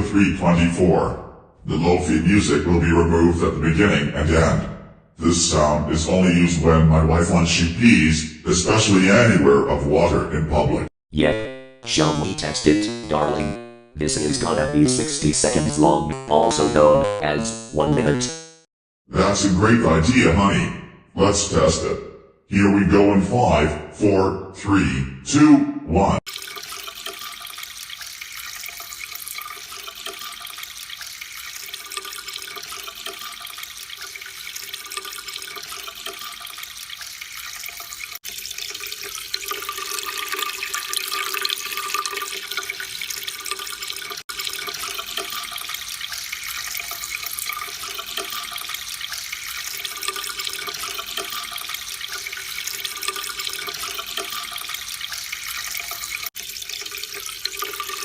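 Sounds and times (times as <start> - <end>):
stream splashing: 26.3 - 58.0.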